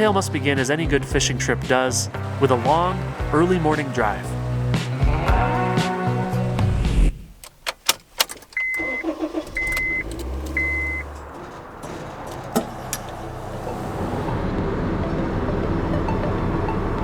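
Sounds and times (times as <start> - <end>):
car engine starting and running: 0.0 - 17.0
warning chime beeps: 8.6 - 11.2.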